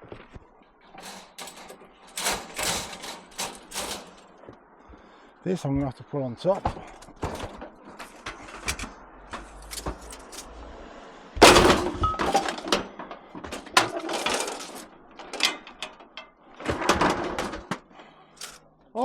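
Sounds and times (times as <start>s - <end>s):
scrap clanking and rattling: 0.1s - 5.1s, 6.5s - 18.7s
heavy bang: 8.4s - 13.1s.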